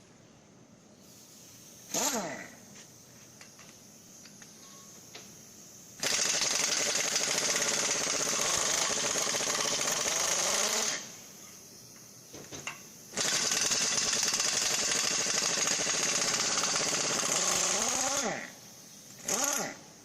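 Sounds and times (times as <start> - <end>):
power tool running in bursts: 6.0 - 11.1, 13.2 - 18.5, 19.2 - 19.8.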